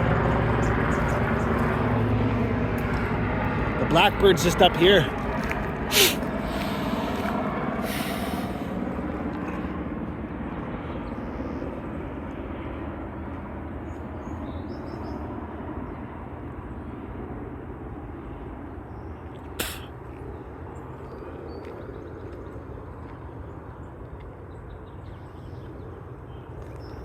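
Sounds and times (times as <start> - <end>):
outdoor rumble and hiss: 0.0 - 14.3, 15.2 - 21.3.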